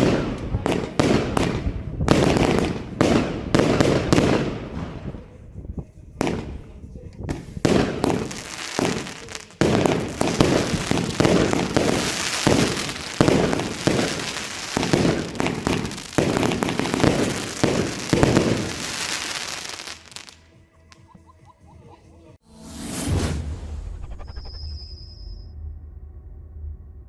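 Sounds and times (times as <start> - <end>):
fireworks bangs and crackle: 0.0 - 20.4.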